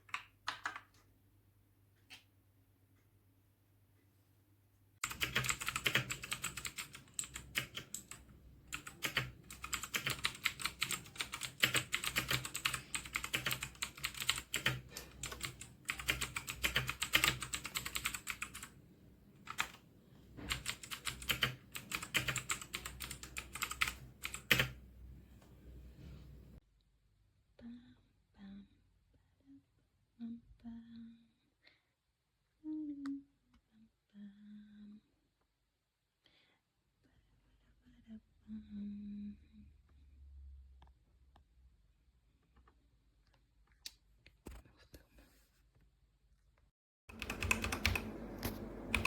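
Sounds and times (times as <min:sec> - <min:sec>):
mechanical keyboard typing: 0:05.0 - 0:18.8, 0:19.4 - 0:19.8, 0:20.5 - 0:24.8, 0:47.1 - 0:49.0.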